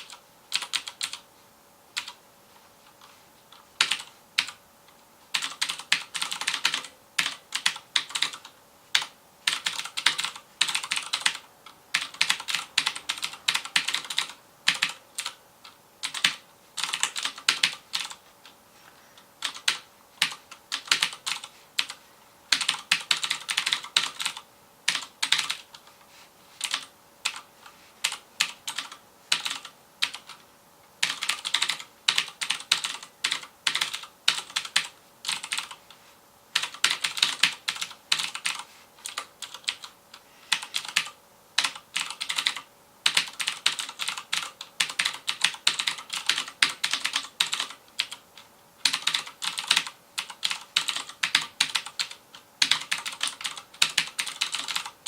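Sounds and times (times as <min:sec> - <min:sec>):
clicky mechanical keyboard typing: 0:00.0 - 0:01.2, 0:02.0 - 0:02.2, 0:02.9 - 0:04.6, 0:05.3 - 0:18.6, 0:19.4 - 0:25.9, 0:26.6 - 0:30.4, 0:31.0 - 0:35.9, 0:36.5 - 0:55.0.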